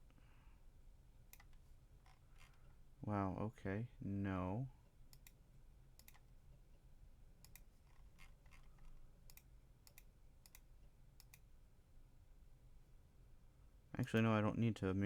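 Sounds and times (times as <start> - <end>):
low steady hum: 0.0 - 15.0
computer mouse clicks: 1.3 - 2.6, 5.1 - 5.4, 6.0 - 6.3, 7.4 - 11.5.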